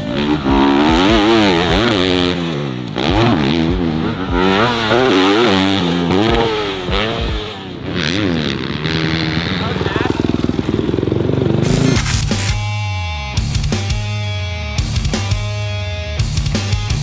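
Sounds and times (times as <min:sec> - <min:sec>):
dirt bike engine revving: 0:00.0 - 0:12.8.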